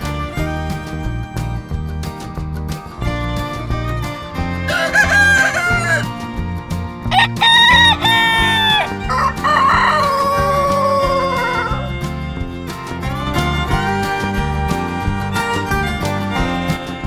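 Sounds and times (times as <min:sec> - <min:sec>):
rooster crowing: 0:04.7 - 0:06.0, 0:07.1 - 0:11.9.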